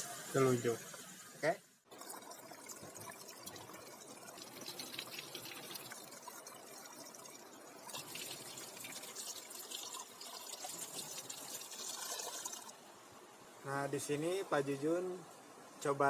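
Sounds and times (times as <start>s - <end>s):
water pouring into pot: 1.9s - 12.8s.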